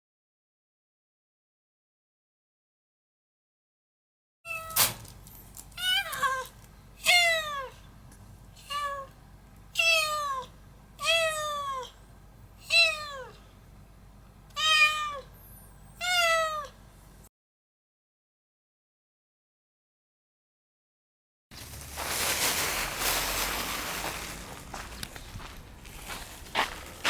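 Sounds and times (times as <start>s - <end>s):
cat meowing: 4.5s - 4.9s, 5.8s - 7.8s, 8.6s - 12.0s, 12.6s - 13.4s, 14.5s - 16.8s.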